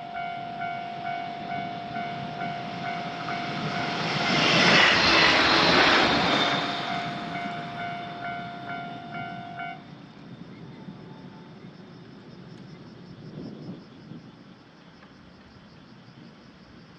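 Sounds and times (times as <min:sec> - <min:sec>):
railroad crossing bell clanging: 0:00.0 - 0:09.9
train rushing past: 0:00.0 - 0:11.7.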